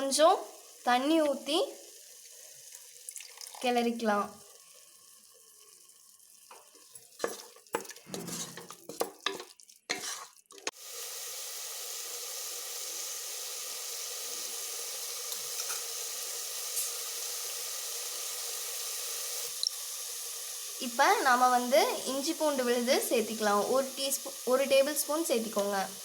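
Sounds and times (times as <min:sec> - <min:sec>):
food sizzling: 0:00.0 - 0:26.0
spoon scraping a metal pot: 0:07.2 - 0:10.7.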